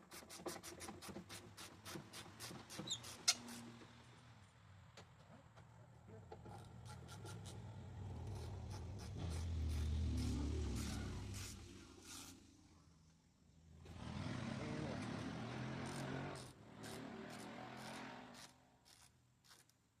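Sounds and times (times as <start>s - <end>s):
short metal squeaks: 2.7s - 3.7s.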